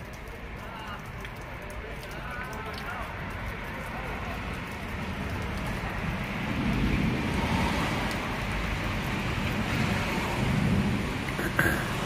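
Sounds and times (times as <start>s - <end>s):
low thunder rumbling: 4.9s - 12.0s
thunderstorm rushing noise: 6.1s - 12.0s.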